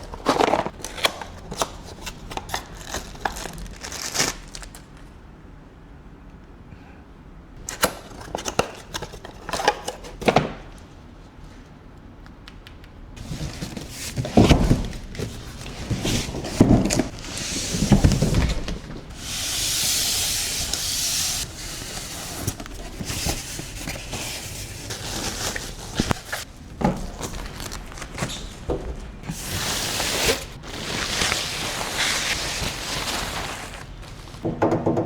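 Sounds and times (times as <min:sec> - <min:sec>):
packaging rustling: 0:00.0 - 0:05.1, 0:13.2 - 0:34.5.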